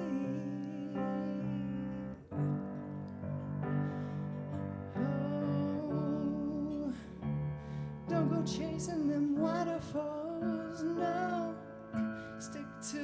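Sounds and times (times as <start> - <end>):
person singing with vibrato: 0.0 - 2.6, 4.6 - 7.2, 8.1 - 13.0
piano chords: 0.0 - 13.0.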